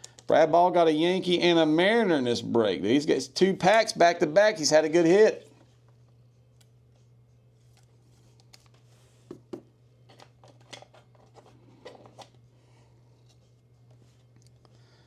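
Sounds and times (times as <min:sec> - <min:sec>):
faint hum: 0:00.0 - 0:15.0
cards and packaging handled: 0:07.6 - 0:12.5.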